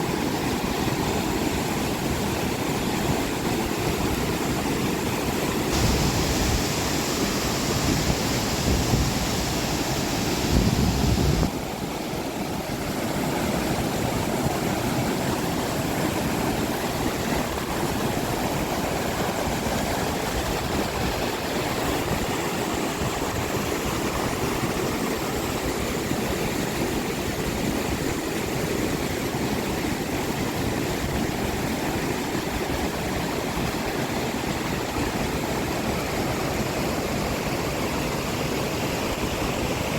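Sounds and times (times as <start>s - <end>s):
flowing water rushing: 0.0s - 39.9s
hissy rumbling noise: 5.7s - 11.5s.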